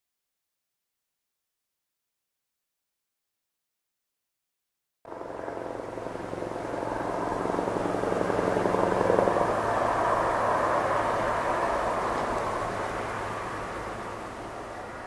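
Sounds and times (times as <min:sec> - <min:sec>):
truck engine driving past: 0:06.0 - 0:15.0.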